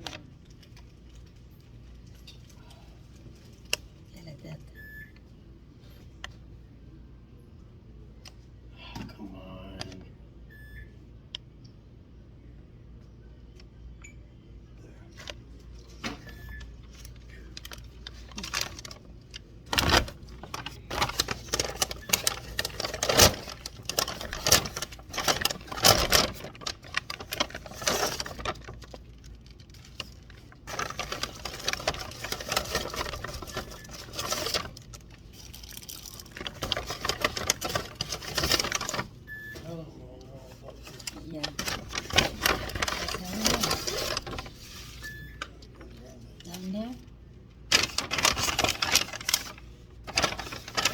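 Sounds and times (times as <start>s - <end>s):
crinkling plastic: 0.0s - 4.1s, 15.1s - 50.9s.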